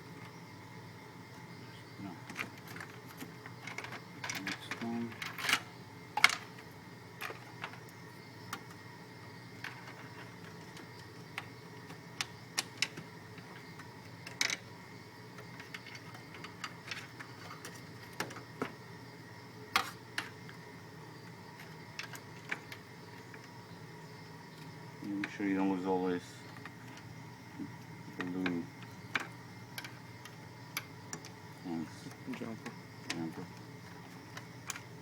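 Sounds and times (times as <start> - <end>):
steady low hum: 0.0 - 35.0
small clicks and taps on metal: 28.1 - 31.4.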